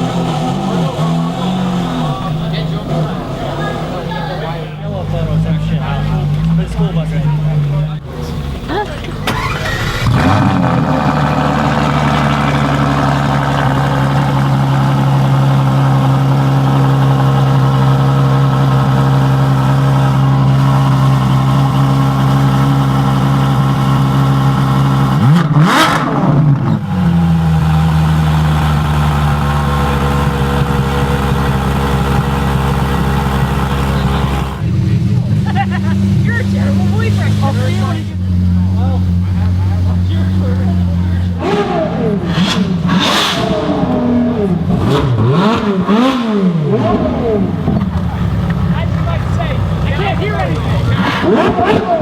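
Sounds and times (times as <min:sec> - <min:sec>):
car engine idling and revving: 0:00.0 - 0:52.0.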